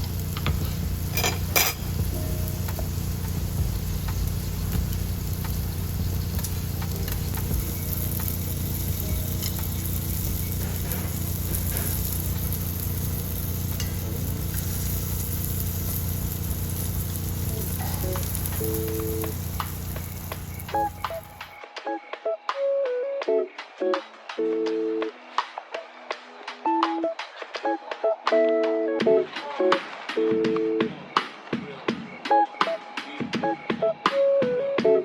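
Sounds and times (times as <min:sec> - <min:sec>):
meat sizzling on a grill: 0:00.0 - 0:21.5.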